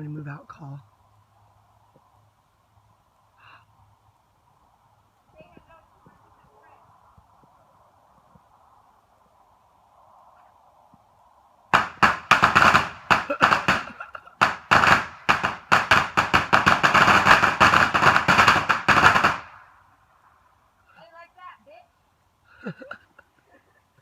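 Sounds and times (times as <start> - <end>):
firecrackers crackling bangs: 11.7 - 19.8.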